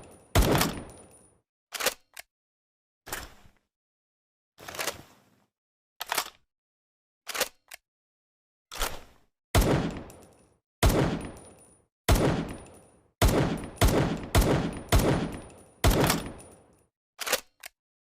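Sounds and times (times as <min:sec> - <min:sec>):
pistol shot bangs: 0:00.0 - 0:01.0, 0:09.6 - 0:10.1, 0:10.8 - 0:11.4, 0:12.1 - 0:12.6, 0:13.2 - 0:16.5.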